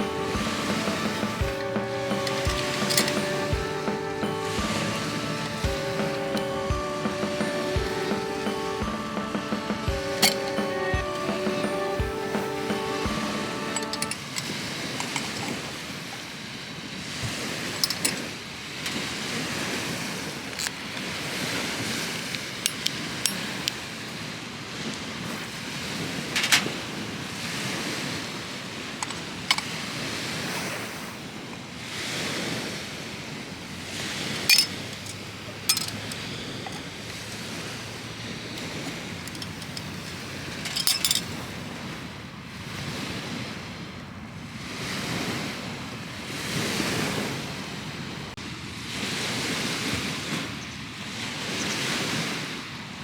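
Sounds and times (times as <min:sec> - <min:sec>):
sharp clicks and clinks: 0:34.5 - 0:36.8.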